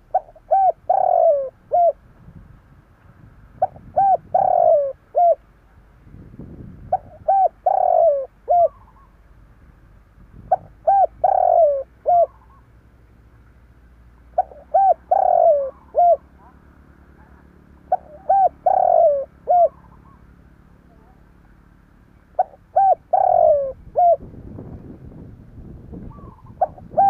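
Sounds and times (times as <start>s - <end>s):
dove cooing: 0.0s - 2.0s, 3.6s - 5.5s, 6.9s - 9.2s, 10.4s - 12.7s, 14.3s - 21.2s, 22.3s - 24.3s, 26.0s - 27.0s.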